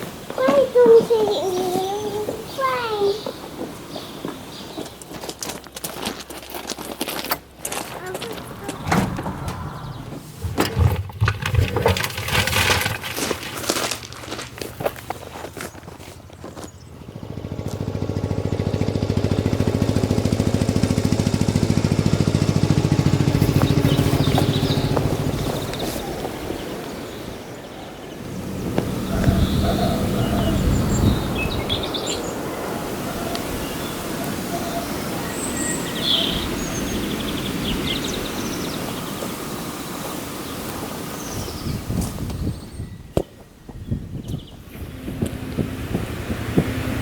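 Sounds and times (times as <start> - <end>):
small birds chirping: 0.0 - 6.0, 7.7 - 10.9, 14.8 - 47.0
tractor engine driving by: 7.9 - 41.2, 44.6 - 47.0.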